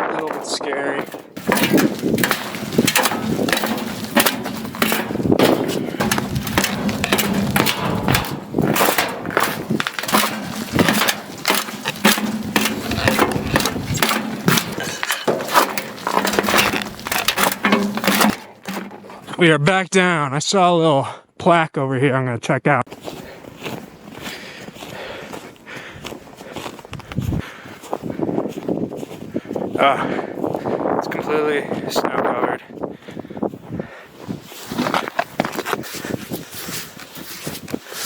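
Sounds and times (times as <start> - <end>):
boots crunching on snowy stairs: 1.0 - 19.3, 22.9 - 29.7.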